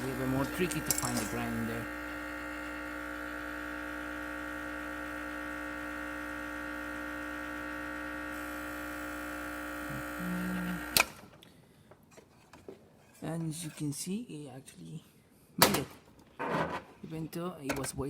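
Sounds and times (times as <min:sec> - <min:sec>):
espresso machine pump humming: 0:00.0 - 0:11.2.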